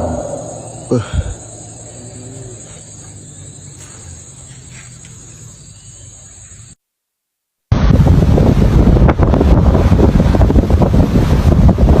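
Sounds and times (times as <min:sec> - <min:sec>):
crickets chirping: 0:00.0 - 0:06.8
faint outdoor hiss: 0:00.0 - 0:12.0.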